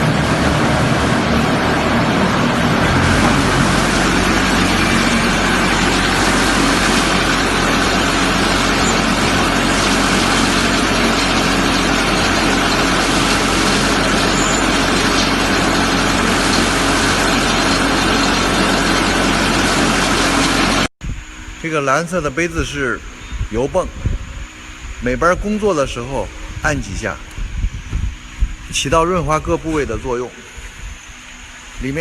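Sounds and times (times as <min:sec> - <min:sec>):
diesel engine running: 0:00.0 - 0:21.4.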